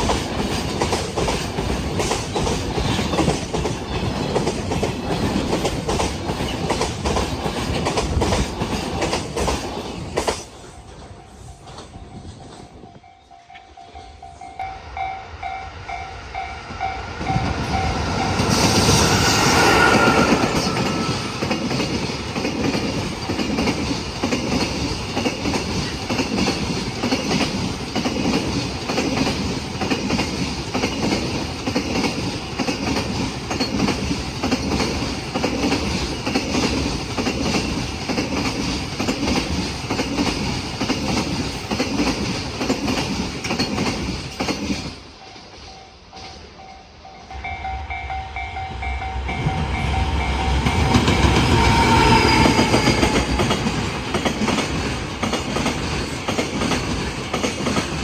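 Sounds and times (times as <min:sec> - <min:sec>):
locomotive passing: 0:00.0 - 0:58.0
level-crossing warning bell: 0:10.8 - 0:22.4, 0:45.0 - 0:53.7.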